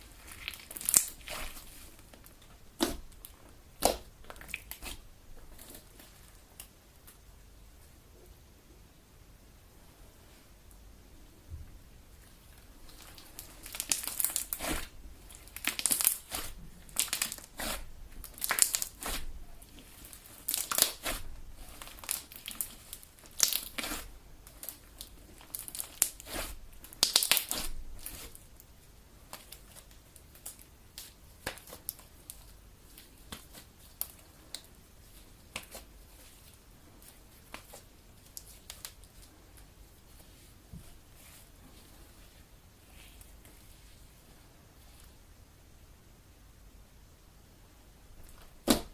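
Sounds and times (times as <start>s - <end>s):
slime kneaded crackly clicks: 0.2s - 5.0s, 12.9s - 28.4s, 29.3s - 34.7s.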